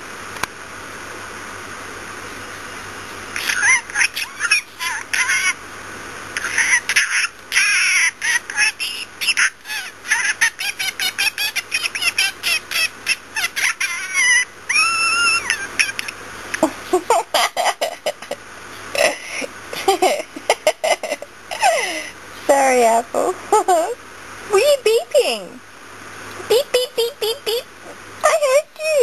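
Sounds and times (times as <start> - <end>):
budgie chattering and warbling: 3.4 - 5.6, 6.4 - 18.3.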